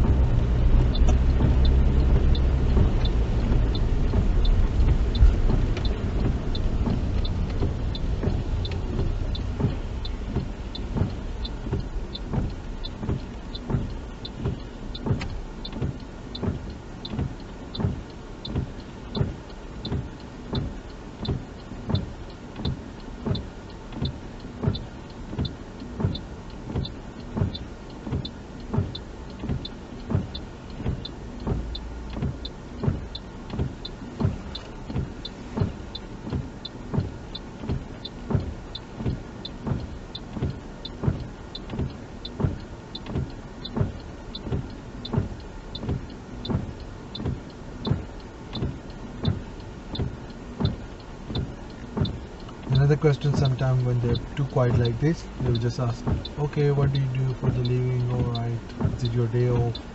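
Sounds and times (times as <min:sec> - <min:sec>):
car road noise: 0:00.0 - 0:59.9
turn indicator ticking: 0:00.0 - 0:59.9.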